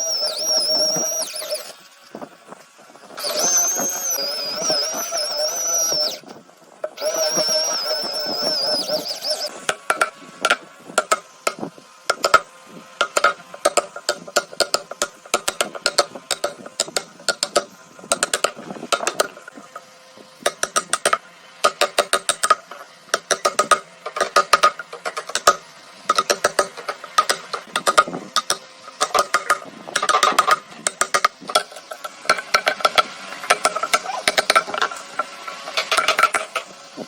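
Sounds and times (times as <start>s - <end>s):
sharp mechanical clicking: 13.0s - 19.5s, 20.4s - 35.0s.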